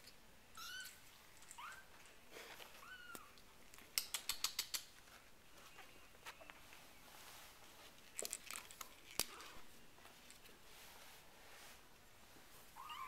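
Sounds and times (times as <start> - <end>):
sharp clicks: 3.9 - 4.9.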